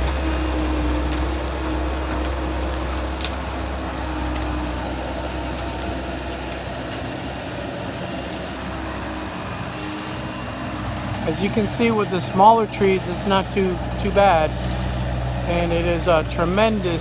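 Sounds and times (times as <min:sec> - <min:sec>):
engine running low rumble: 0:00.0 - 0:17.0.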